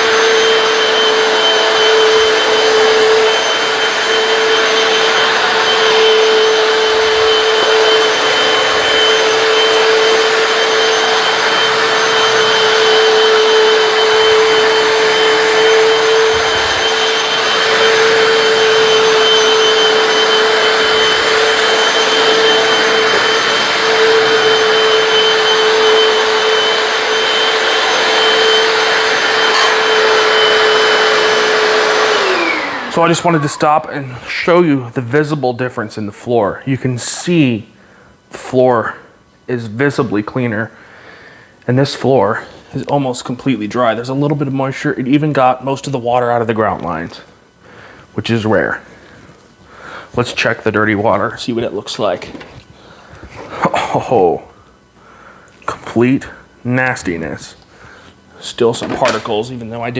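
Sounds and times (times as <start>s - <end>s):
motor winding down: 0.0s - 34.0s
floor cleaner motor humming: 0.0s - 34.7s.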